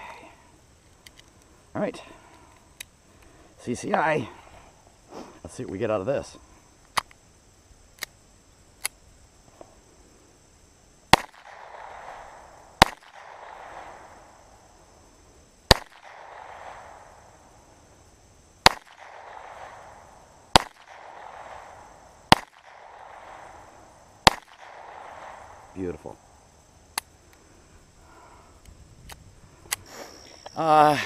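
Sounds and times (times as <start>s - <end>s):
pistol shots: 11.1s - 14.0s, 15.7s - 17.1s, 18.6s - 23.5s, 24.2s - 25.6s.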